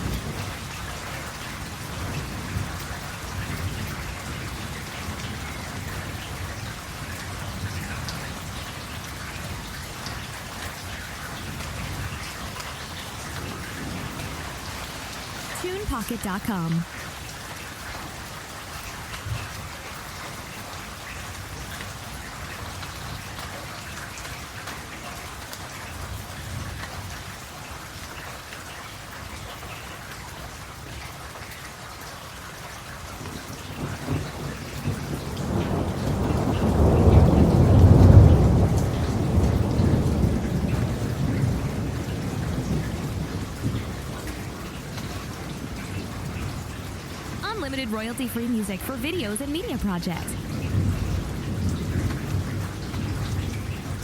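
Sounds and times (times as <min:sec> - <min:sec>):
steady rain falling: 0:00.0 - 0:54.0
rolling thunder rumble: 0:34.2 - 0:44.5.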